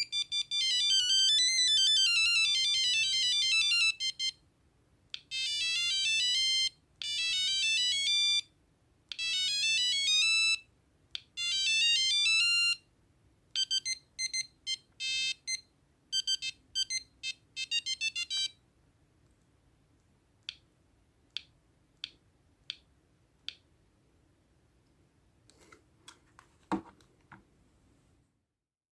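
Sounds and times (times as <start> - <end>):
mobile phone ringtone beeping: 0.0 - 4.4, 5.3 - 8.5, 9.2 - 10.7, 11.4 - 12.8, 13.6 - 18.6.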